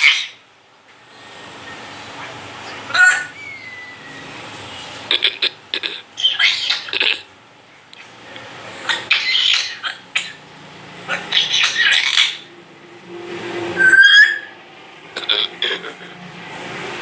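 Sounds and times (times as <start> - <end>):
parrot whistle: 2.9 - 4.4, 13.8 - 14.6
parrot rasping: 11.0 - 12.5, 15.1 - 16.3.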